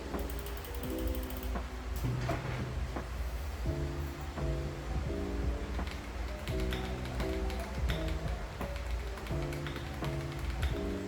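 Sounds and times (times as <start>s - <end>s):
soft background music: 0.0s - 11.0s
mechanical keyboard keystrokes: 5.8s - 10.9s.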